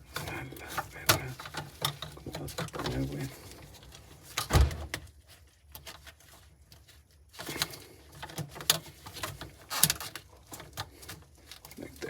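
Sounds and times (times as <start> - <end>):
thump: 4.5 - 4.9.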